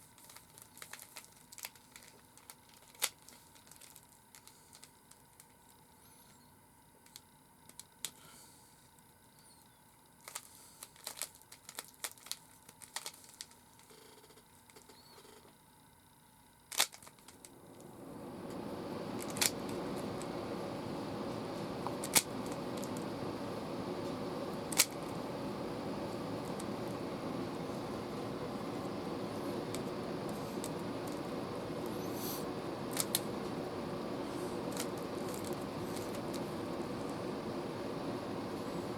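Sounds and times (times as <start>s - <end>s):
steady rushing noise: 17.5s - 38.9s.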